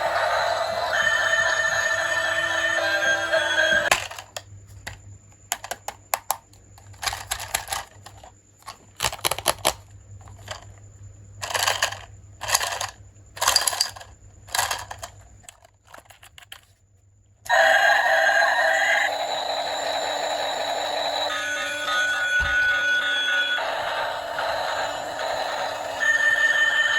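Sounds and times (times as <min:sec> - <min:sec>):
electronic toy ringing tone: 0:00.0 - 0:03.9, 0:17.5 - 0:26.9
plastic toy pieces clicking: 0:03.9 - 0:10.8, 0:11.4 - 0:16.7.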